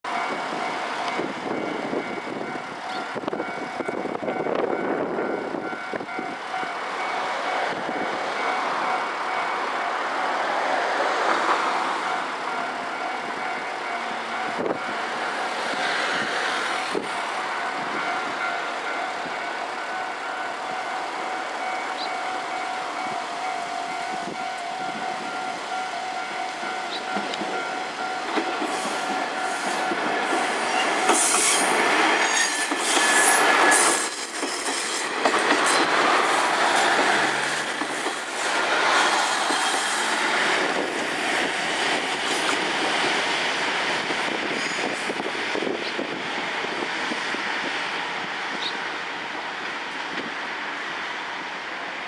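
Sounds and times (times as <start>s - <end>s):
level crossing warning bells: 0.1s - 34.8s.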